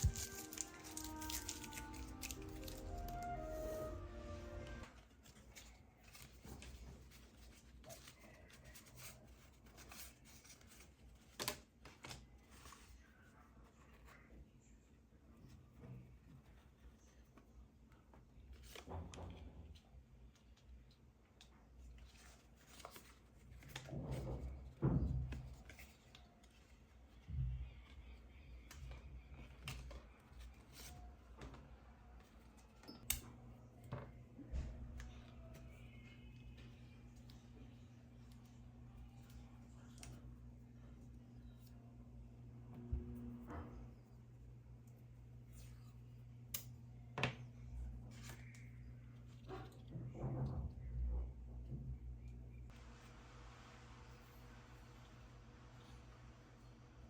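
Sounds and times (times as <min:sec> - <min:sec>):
faint rustling and handling: 0:00.0 - 0:42.2.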